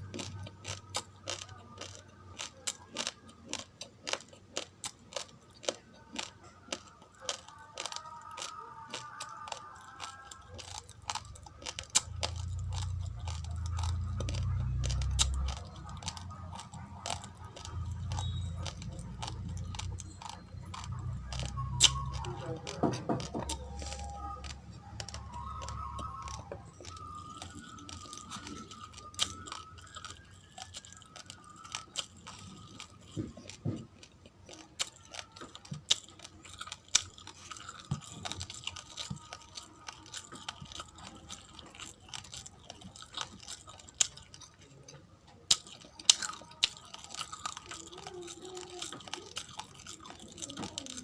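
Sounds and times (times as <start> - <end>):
chewing raw rice crunches: 0.0 - 51.0.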